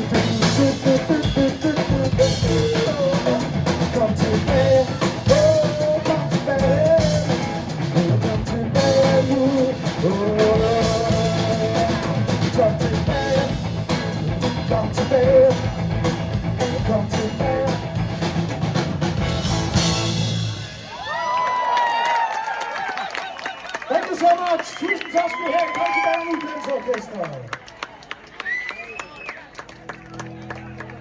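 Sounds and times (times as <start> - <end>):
person singing: 0.0 - 15.9, 16.6 - 18.0
electric guitar: 0.0 - 21.0
drum kit: 0.0 - 21.4.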